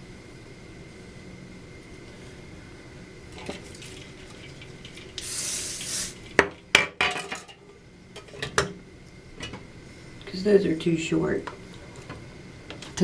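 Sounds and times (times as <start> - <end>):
spray hiss: 5.2 - 6.2.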